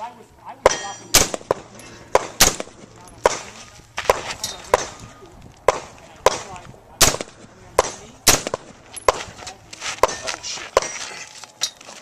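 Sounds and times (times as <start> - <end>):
rifle shots: 1.1 - 5.1, 5.7 - 9.3.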